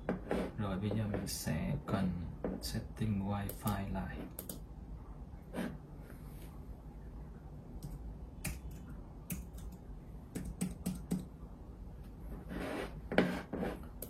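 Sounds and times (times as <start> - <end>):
computer keyboard keystrokes: 4.4 - 4.6, 7.8 - 11.3.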